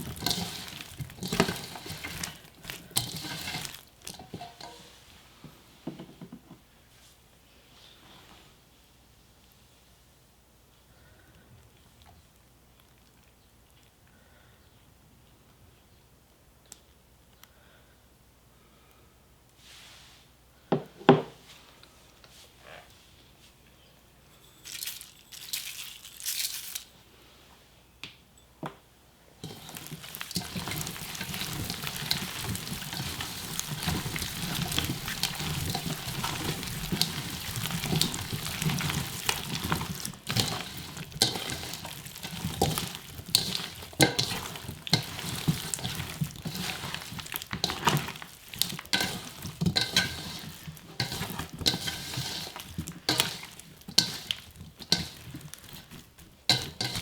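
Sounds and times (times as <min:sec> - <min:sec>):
onions squishing in seasoning: 0:00.0 - 0:05.3, 0:24.6 - 0:27.0, 0:29.4 - 0:57.0.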